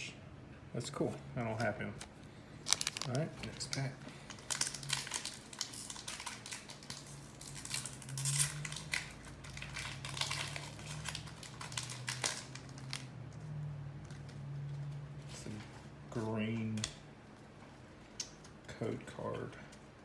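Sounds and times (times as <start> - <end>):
foil wrapper crinkling: 2.6 - 13.1.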